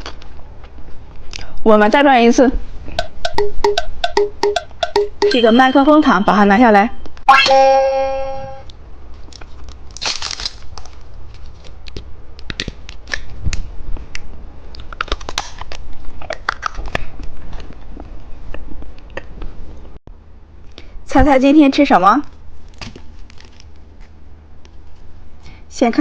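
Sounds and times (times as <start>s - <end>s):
pitched ringing tone: 3.0s - 8.7s
plastic packaging crinkling: 9.4s - 11.9s, 22.6s - 24.0s.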